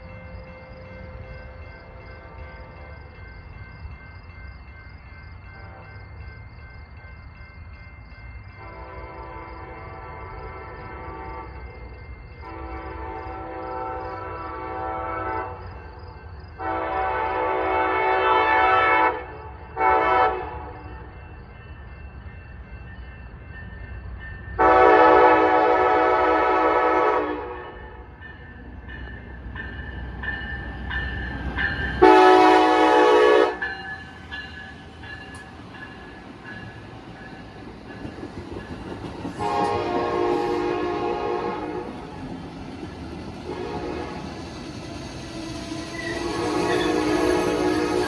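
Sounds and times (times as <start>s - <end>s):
low rumble of train: 0.0s - 48.0s
train horn blasts: 8.6s - 11.7s, 12.4s - 15.6s, 16.6s - 21.0s, 24.6s - 28.1s, 31.9s - 33.8s, 39.3s - 42.1s, 43.4s - 44.5s, 45.7s - 48.0s.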